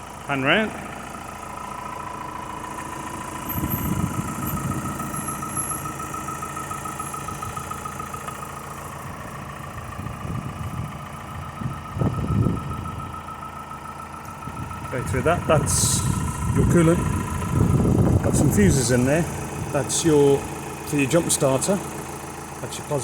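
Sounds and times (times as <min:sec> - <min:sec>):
diesel engine idling: 0:00.0 - 0:23.0
low rumble: 0:03.4 - 0:05.3, 0:14.5 - 0:18.8.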